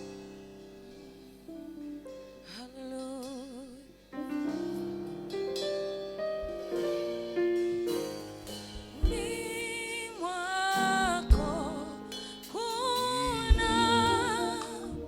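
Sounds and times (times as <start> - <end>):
sustained keyboard chords: 4.2 - 15.0
low drum thump: 8.6 - 9.6, 11.0 - 11.8, 13.4 - 14.8
person singing long notes: 9.1 - 15.0.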